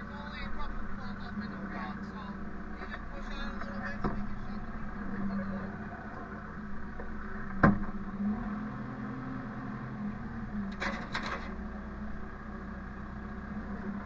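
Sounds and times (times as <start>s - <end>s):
engine humming: 0.0s - 14.0s.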